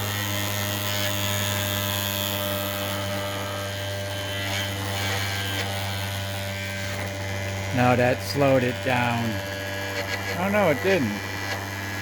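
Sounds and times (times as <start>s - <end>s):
rotor spinning with steady hum: 0.0s - 12.0s.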